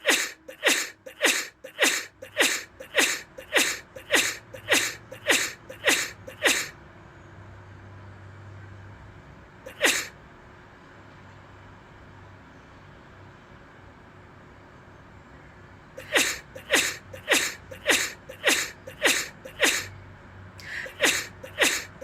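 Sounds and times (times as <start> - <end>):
person sneezing: 0.0 - 6.7, 9.7 - 10.1, 16.0 - 19.9, 20.6 - 22.0.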